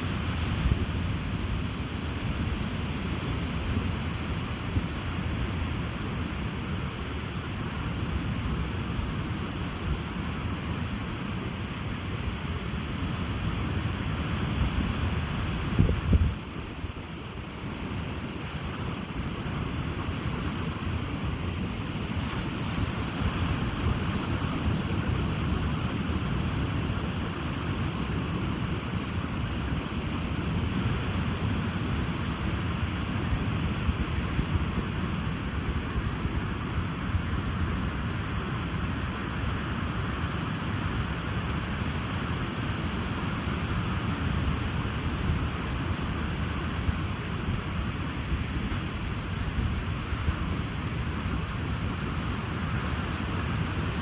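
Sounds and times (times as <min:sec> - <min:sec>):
ocean surf on a beach: 0:00.0 - 0:54.0
wind buffeting microphone: 0:13.1 - 0:36.5.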